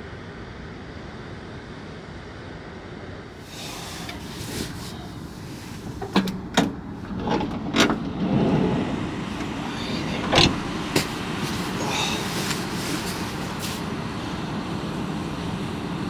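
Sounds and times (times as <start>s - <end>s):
steady background noise: 3.4s - 16.0s
sharp knocks and clunks: 3.5s - 13.6s.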